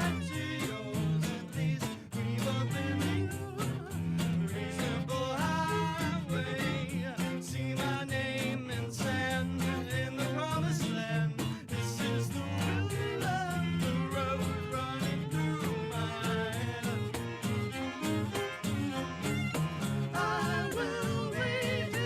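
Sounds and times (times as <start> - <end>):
band playing live: 0.0 - 22.0
person singing: 0.0 - 22.0.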